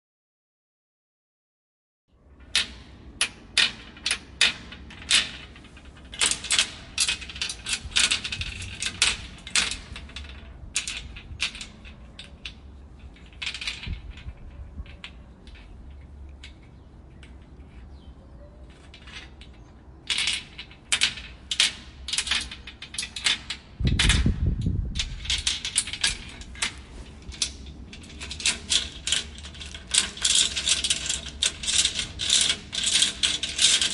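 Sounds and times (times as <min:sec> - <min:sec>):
metal padlocks clanking: 0:03.6 - 0:24.2, 0:25.0 - 0:33.9
chain rattling: 0:25.0 - 0:33.9.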